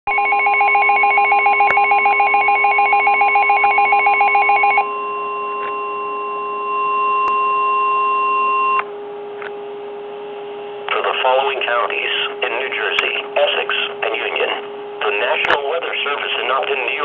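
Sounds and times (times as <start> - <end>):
steady high alarm tone: 0.1 - 8.8.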